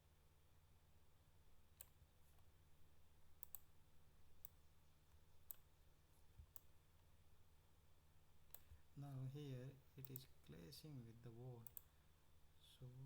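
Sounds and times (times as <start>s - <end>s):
computer mouse clicks: 1.8s - 2.1s, 3.4s - 3.7s, 4.4s - 5.7s, 6.4s - 6.8s, 8.5s - 8.8s, 10.0s - 10.3s, 11.6s - 11.9s.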